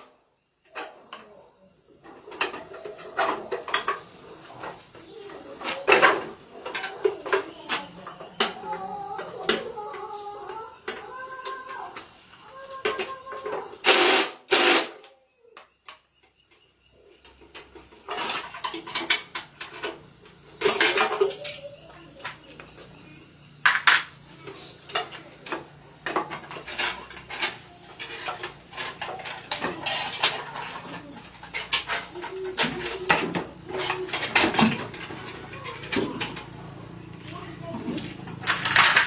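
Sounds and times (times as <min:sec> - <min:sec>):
metal tools clinking: 0:20.6 - 0:22.4, 0:38.0 - 0:39.0.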